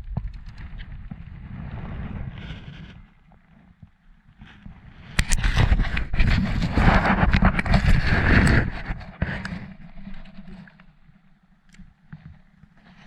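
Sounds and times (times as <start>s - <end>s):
rapid knocks and scraping: 5.2s - 10.9s.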